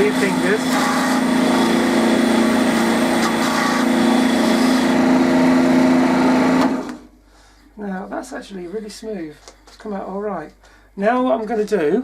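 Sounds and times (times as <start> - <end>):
wood lathe motor humming: 0.0 - 7.1.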